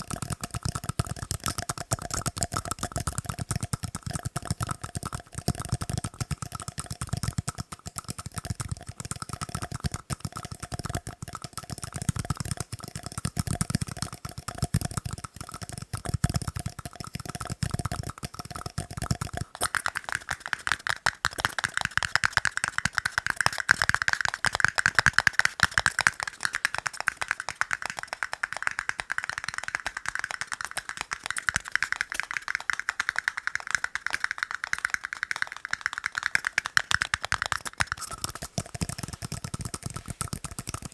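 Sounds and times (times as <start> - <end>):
fast tapping on tiny cups: 0.0 - 40.9.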